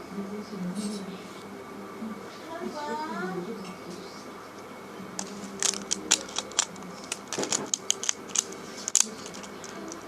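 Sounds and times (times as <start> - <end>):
plastic toy parts clicking: 5.2 - 10.0.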